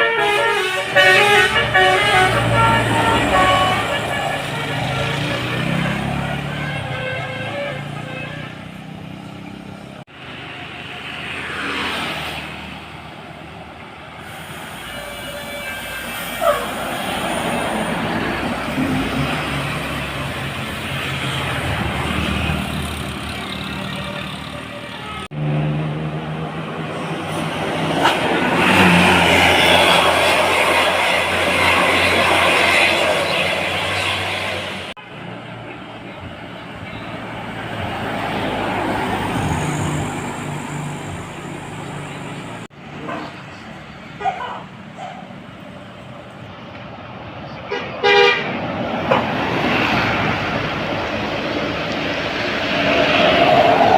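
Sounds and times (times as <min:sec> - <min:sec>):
bus passing by: 0:00.0 - 0:53.9
vehicle passing: 0:01.6 - 0:06.6, 0:07.7 - 0:13.2.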